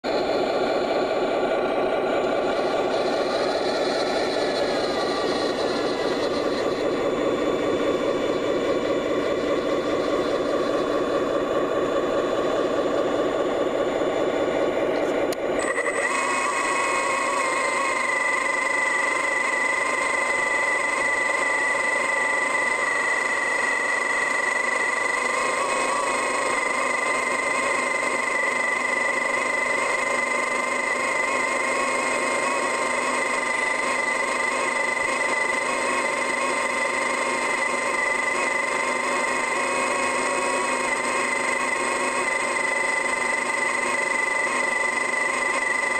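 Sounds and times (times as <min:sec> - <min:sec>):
high steady whine: 0:00.0 - 0:45.9
machine engine and hydraulics: 0:00.0 - 0:45.9.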